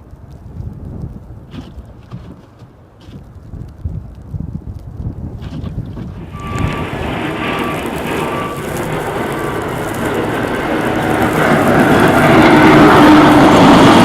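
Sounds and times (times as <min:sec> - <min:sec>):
mechanical engine noise: 0:06.2 - 0:14.0
short high beeps: 0:06.3 - 0:08.8.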